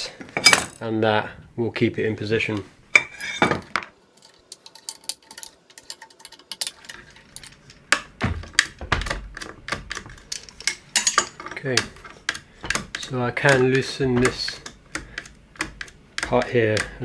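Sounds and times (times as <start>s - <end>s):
metal parts and tools clicking: 3.1s - 16.9s
heavier knocks: 8.2s - 9.3s.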